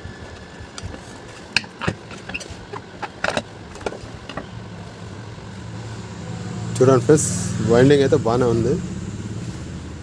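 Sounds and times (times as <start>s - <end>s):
metallic clicks and knocks: 0.8s - 4.5s
low hum: 3.4s - 10.0s.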